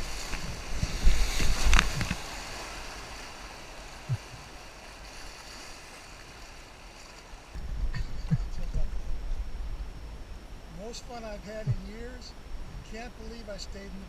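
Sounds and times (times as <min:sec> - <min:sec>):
wind buffeting: 0:00.0 - 0:06.7, 0:07.4 - 0:12.9
river water rushing: 0:00.0 - 0:07.8
water splash: 0:00.0 - 0:08.7.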